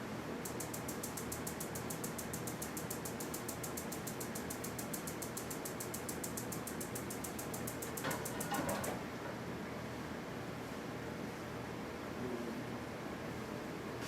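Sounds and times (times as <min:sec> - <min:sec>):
steady low hum: 0:00.0 - 0:14.0
rapid mechanical ticking: 0:00.4 - 0:08.4.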